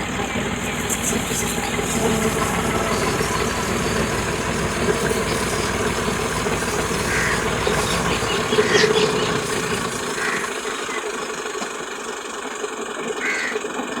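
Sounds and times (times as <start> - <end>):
vehicle engine idling: 0.0 - 14.0
short bird calls: 1.9 - 11.4, 13.2 - 13.6.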